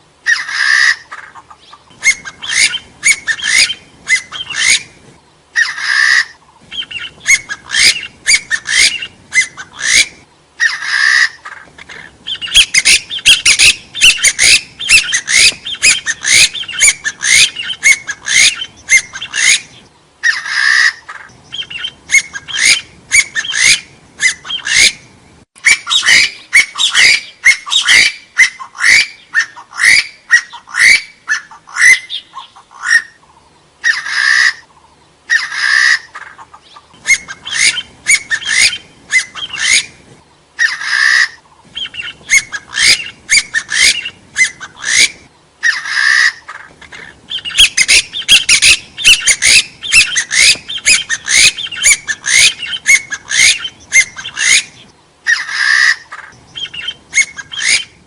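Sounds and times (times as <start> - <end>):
partridge whistled calls: 0.2 - 58.0.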